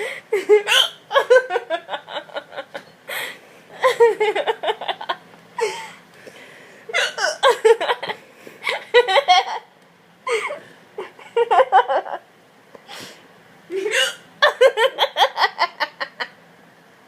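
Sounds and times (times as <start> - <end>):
girl laughing hysterically: 0.0 - 6.0, 6.9 - 9.7, 10.3 - 12.2, 13.7 - 16.4
girl hiccuping: 6.9 - 7.5, 13.7 - 14.3.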